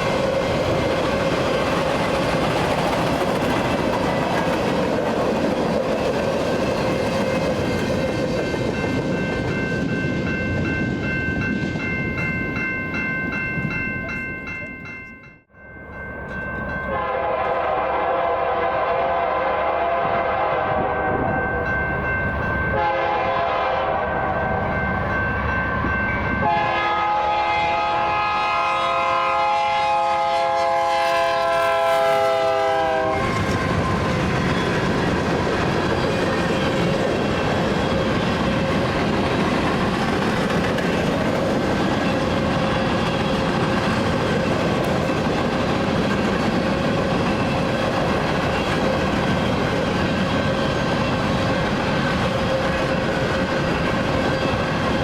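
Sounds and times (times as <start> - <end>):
freight train cars rolling: 0.0 - 17.8, 20.8 - 55.0
wind: 0.0 - 55.0
locomotive horn blasts: 16.9 - 21.3, 22.7 - 24.6, 26.4 - 33.9.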